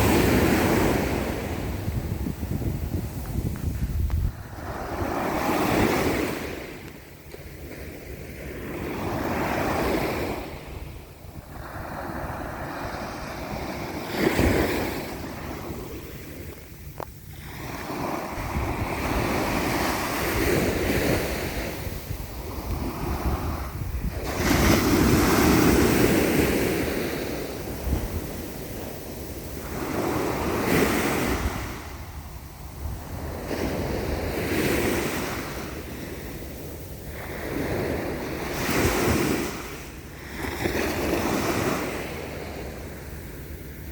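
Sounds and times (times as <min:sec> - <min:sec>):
sea waves breaking on shore: 0:00.0 - 0:43.9
wind on microphone: 0:00.0 - 0:43.9.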